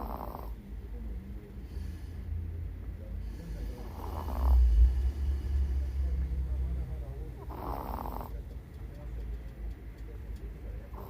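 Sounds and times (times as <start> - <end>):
dog snoring: 0.0 - 0.6, 3.3 - 6.3, 7.3 - 8.4
steady low rumble: 0.5 - 11.0.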